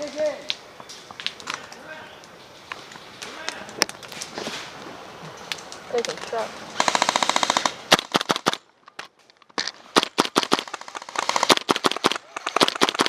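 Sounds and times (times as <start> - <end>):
airsoft guns firing bursts: 6.8 - 8.6, 10.0 - 13.0.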